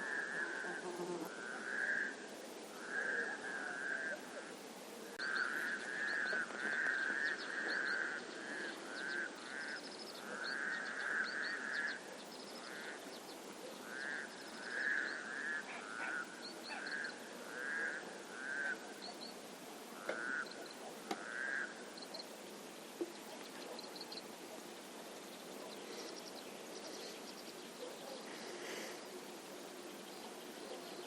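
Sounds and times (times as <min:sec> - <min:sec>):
frogs croaking in chorus: 0:00.0 - 0:04.5, 0:05.2 - 0:22.4
small birds chirping: 0:21.9 - 0:31.0.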